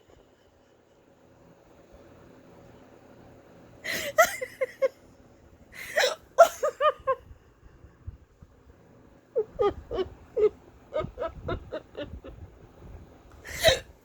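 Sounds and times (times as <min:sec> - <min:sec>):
person giggling: 0:03.9 - 0:04.9, 0:05.9 - 0:07.2, 0:09.4 - 0:12.5.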